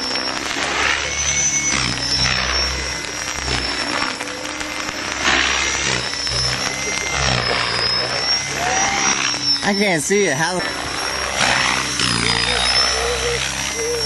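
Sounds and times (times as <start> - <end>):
model helicopter whine: 0.0 - 14.0
rotor blades whooshing: 0.0 - 14.0.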